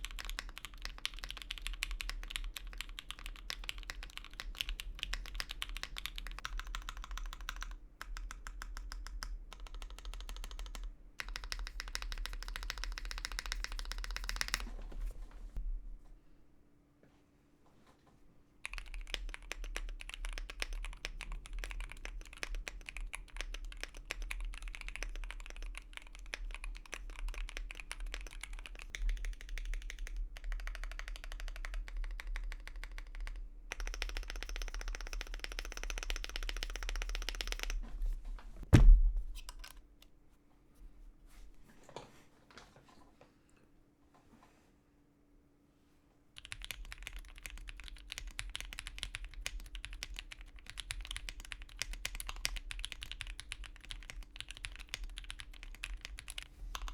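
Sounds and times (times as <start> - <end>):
typing on mechanical keyboard: 0.0 - 14.7, 18.6 - 37.8, 46.4 - 56.9
loud thump: 38.6 - 39.4.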